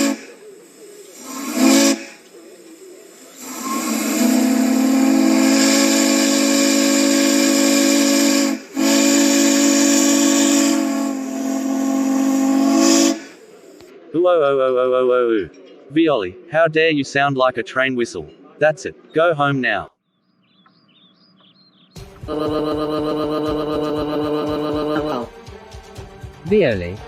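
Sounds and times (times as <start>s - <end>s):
steam train whistle: 0.0s - 13.8s, 22.3s - 25.4s
steam hissing: 0.0s - 13.9s, 22.2s - 25.6s.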